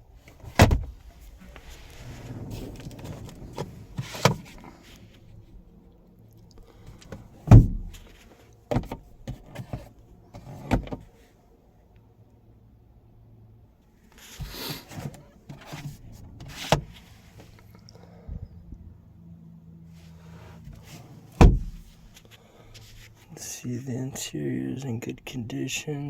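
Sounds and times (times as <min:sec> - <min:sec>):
soft rustling of handling: 0:00.0 - 0:12.0, 0:13.8 - 0:18.2, 0:19.8 - 0:25.0
plastic glove box clacking shut: 0:00.4 - 0:01.0, 0:21.4 - 0:21.8.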